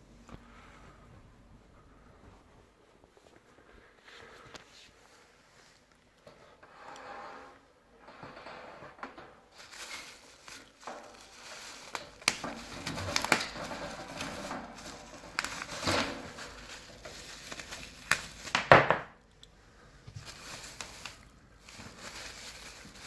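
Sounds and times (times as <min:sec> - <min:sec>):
packing material crinkling: 0:09.5 - 0:19.3, 0:20.1 - 0:23.0.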